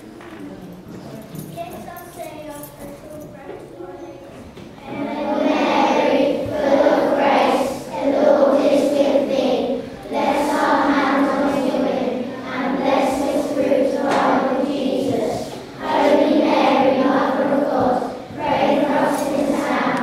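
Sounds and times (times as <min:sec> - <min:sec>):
children singing together: 0:04.8 - 0:20.0.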